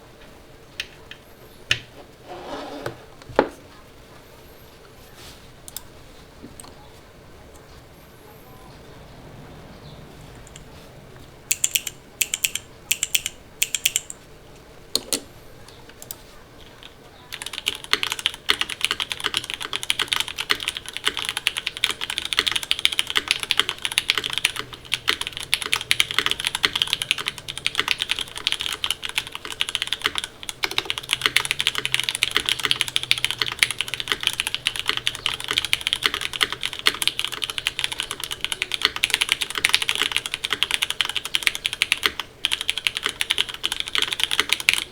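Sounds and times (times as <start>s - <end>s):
typing on mechanical keyboard: 11.5s - 14.2s, 15.9s - 44.9s.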